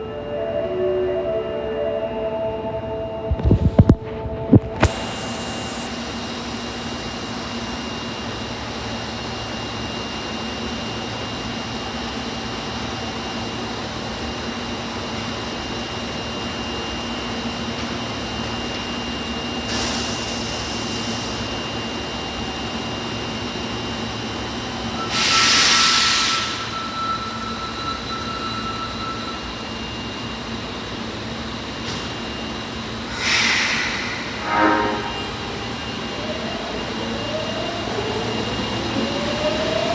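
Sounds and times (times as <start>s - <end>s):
subway car humming: 0.0s - 39.9s
short hissing bursts: 33.1s - 34.5s.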